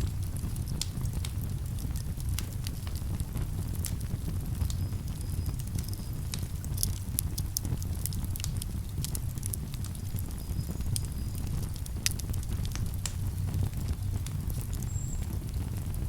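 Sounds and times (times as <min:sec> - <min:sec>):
campfire crackling and popping: 0:00.0 - 0:16.0
steady low rumble: 0:00.0 - 0:16.0.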